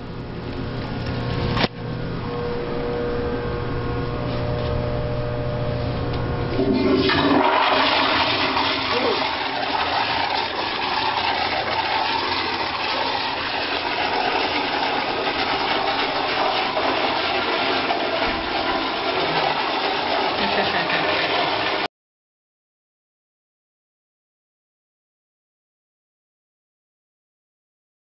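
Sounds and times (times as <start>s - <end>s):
toilet flushing and refilling: 6.5s - 21.9s.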